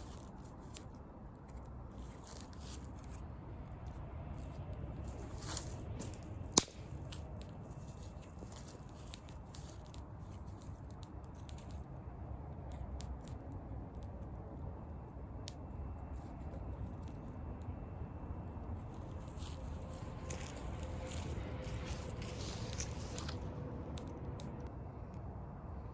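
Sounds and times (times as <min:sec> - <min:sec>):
campfire crackling: 0:00.0 - 0:14.4, 0:18.2 - 0:25.2
low fire rumble: 0:00.0 - 0:25.9.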